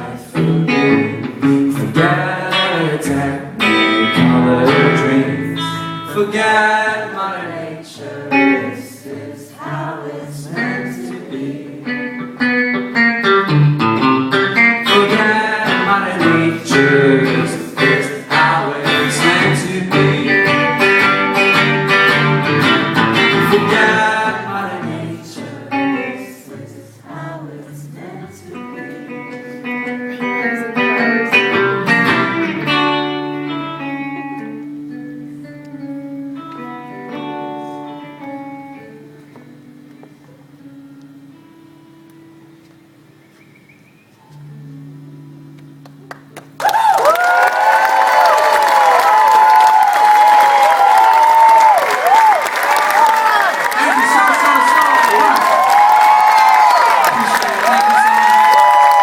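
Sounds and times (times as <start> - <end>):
live band playing pop instrumental: 19.0 - 24.0.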